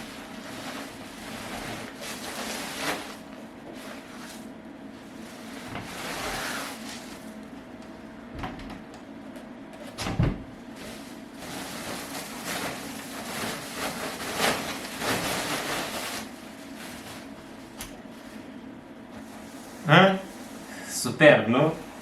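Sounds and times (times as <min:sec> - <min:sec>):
packaging rustling and scraping: 0:00.0 - 0:07.4, 0:10.8 - 0:18.4.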